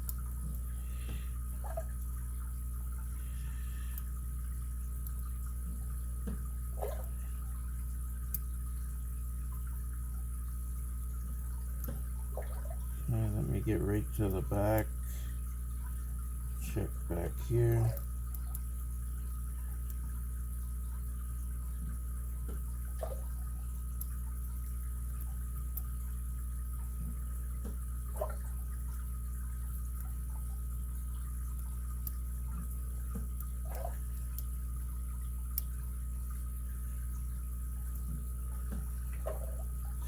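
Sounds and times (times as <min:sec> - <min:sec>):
steady low hum: 0:00.0 - 0:40.0.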